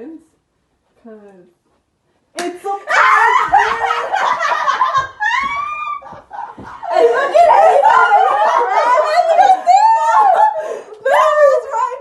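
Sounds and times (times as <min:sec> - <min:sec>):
girls laughing and giggling: 0:02.8 - 0:12.0.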